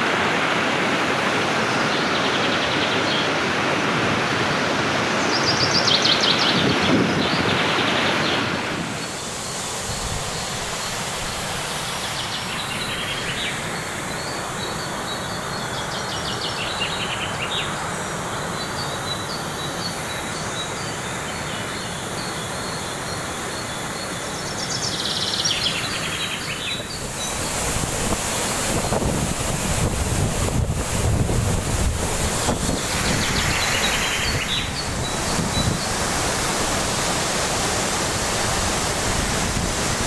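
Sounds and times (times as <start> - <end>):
waterfall rushing: 0.0 - 40.0
high chirping calls: 32.7 - 35.9.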